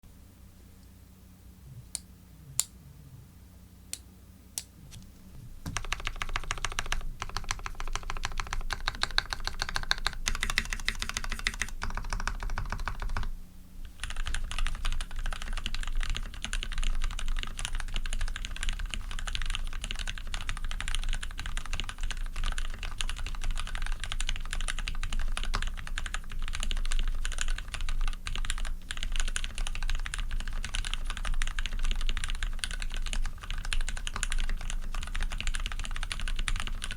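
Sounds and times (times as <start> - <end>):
mechanical keyboard typing: 5.6 - 13.3, 13.9 - 36.9.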